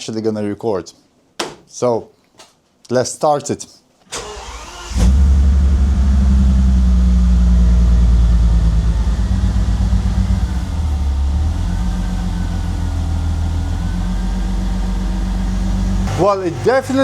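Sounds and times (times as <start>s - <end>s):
engine cranking on starter: 4.1s - 6.9s
engine fast idle: 4.2s - 17.0s.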